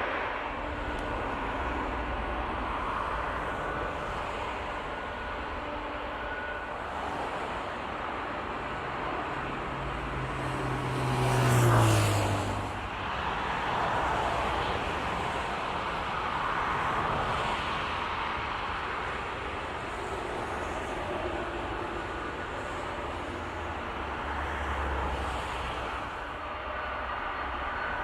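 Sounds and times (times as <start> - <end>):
vehicle passing by: 10.7 - 12.8.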